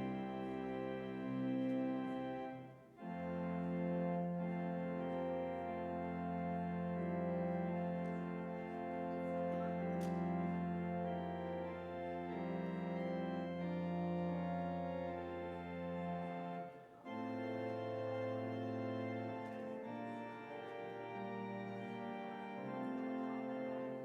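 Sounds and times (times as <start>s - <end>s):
organ playing slow chords: 0.0s - 24.0s.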